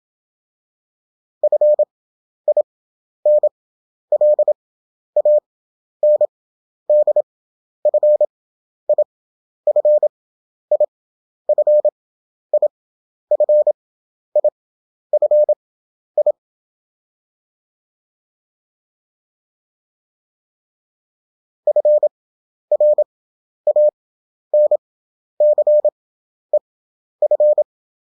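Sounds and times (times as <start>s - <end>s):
morse code tone: 25.4s - 25.9s, 27.2s - 27.6s.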